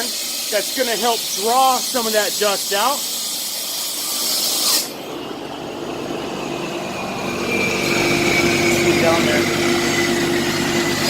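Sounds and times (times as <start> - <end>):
loud hiss: 0.0 - 5.1
held whine: 4.8 - 11.0
ventilation motor hum: 4.9 - 11.0.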